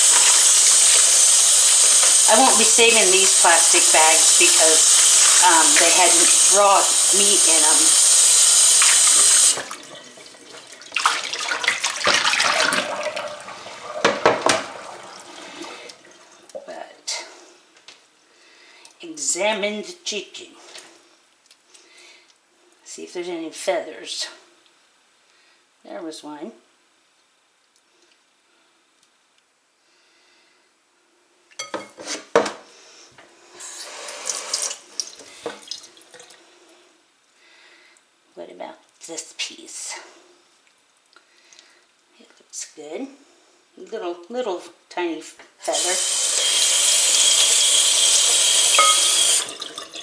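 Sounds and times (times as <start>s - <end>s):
tap running into sink: 0.0s - 16.0s, 46.0s - 50.0s
water splashing in sink: 0.0s - 16.6s, 33.6s - 36.4s, 45.7s - 50.0s
knocking in sink: 12.1s - 15.1s.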